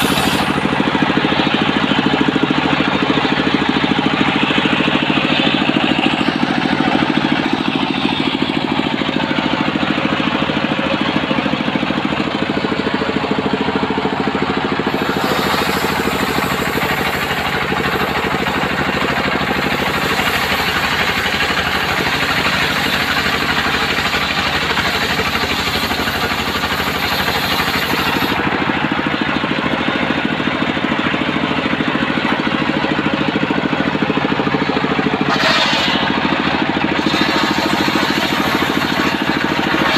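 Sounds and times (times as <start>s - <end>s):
saw blade cutting log: 0.0s - 9.7s, 14.5s - 28.6s, 35.1s - 39.9s
sawmill motor humming: 0.0s - 39.9s.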